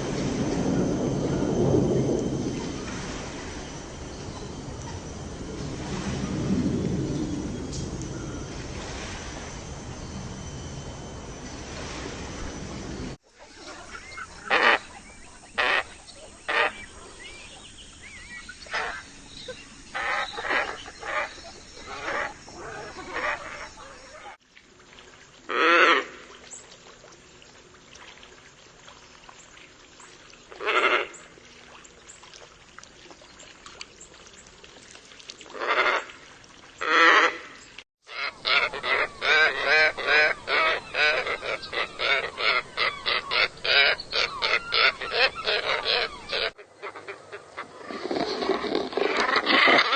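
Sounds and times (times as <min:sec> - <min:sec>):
hoarse bird calls: 0:13.8 - 0:24.4, 0:36.8 - 0:49.9.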